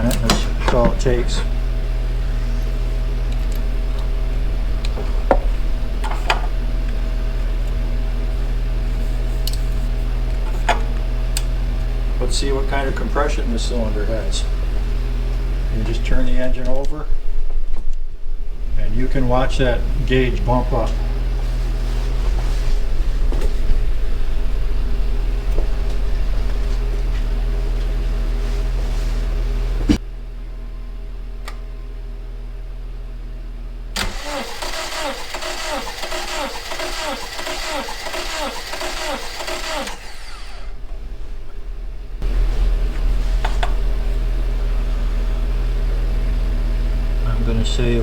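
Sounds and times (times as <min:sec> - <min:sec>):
starter motor cranking engine: 0:00.0 - 0:17.1, 0:34.0 - 0:41.1
steady electrical hum: 0:00.0 - 0:34.0, 0:39.9 - 0:48.0.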